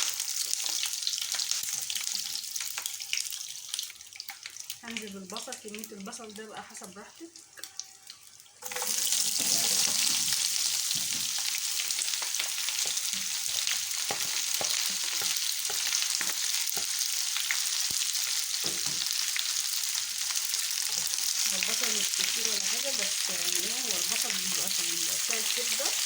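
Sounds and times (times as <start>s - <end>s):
onions sizzling in hot oil: 0.0s - 26.0s
spoon clicking and scraping pan: 11.8s - 19.1s.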